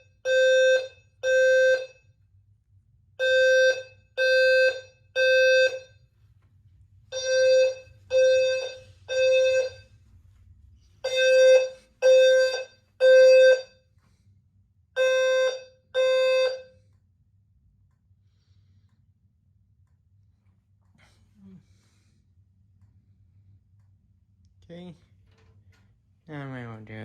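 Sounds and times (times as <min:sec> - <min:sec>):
fire alarm horn: 0:00.0 - 0:02.4, 0:03.2 - 0:06.3, 0:07.0 - 0:14.0, 0:14.9 - 0:17.0.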